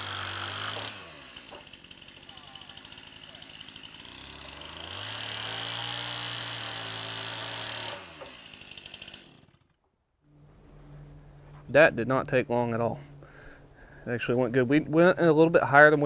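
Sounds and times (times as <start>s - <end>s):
power tool motor spinning: 0.0s - 9.8s.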